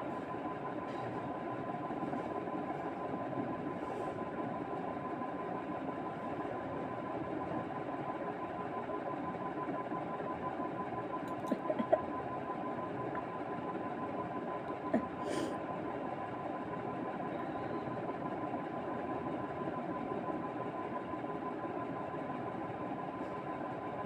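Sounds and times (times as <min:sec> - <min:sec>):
machine hum: 0:04.3 - 0:23.0.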